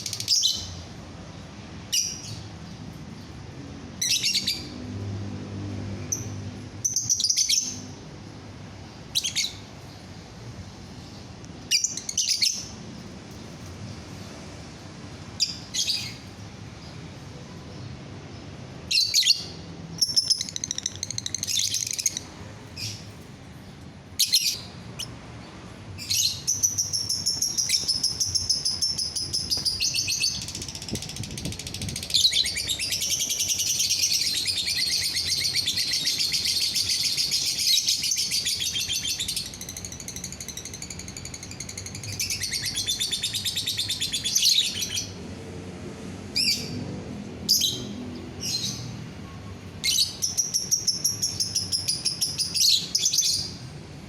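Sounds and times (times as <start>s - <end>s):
bird high chirps: 6.2s - 8.0s, 11.7s - 12.7s, 18.9s - 23.2s, 26.0s - 45.1s, 47.5s - 53.7s.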